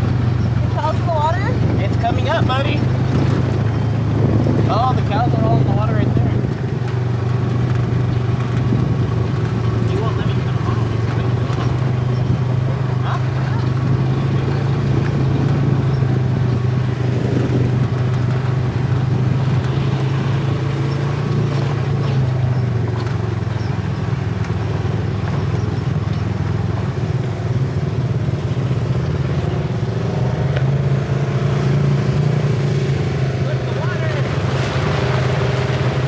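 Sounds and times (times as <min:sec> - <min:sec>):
utility vehicle engine running: 0:00.0 - 0:36.0.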